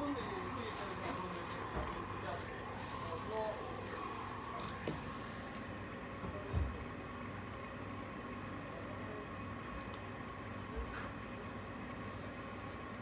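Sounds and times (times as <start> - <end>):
torch flame hissing: 0.0 - 9.3.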